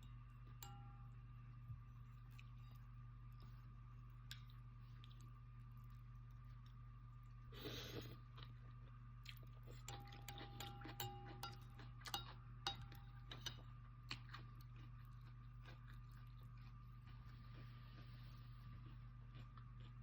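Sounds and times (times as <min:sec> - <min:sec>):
steady low hum: 0:00.0 - 0:20.0
chewing: 0:07.6 - 0:20.0.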